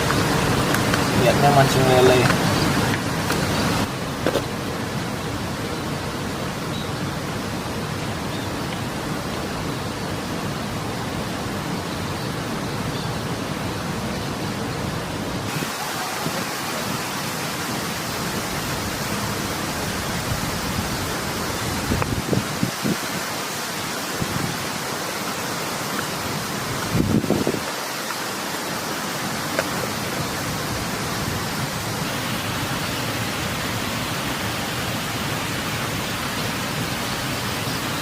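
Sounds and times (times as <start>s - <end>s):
rain falling: 0.0s - 38.0s
water flowing over a weir: 0.0s - 38.0s.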